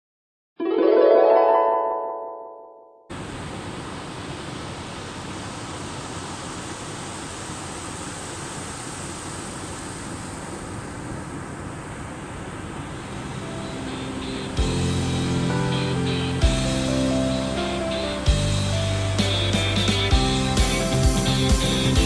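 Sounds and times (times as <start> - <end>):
marimba jingle: 0.6 - 3.0
steady rushing noise: 3.1 - 22.0.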